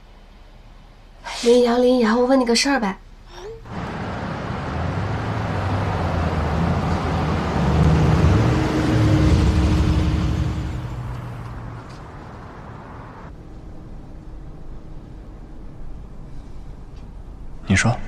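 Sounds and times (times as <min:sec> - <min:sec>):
car driving past: 0:03.7 - 0:13.4.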